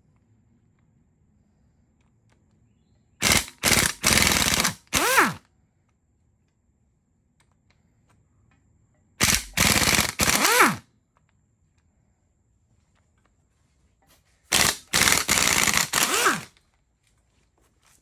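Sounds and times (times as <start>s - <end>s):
wrench motor winding down: 3.2s - 5.4s, 9.2s - 10.8s, 14.5s - 16.6s
impact wrench hammering: 9.2s - 10.8s, 14.6s - 16.5s.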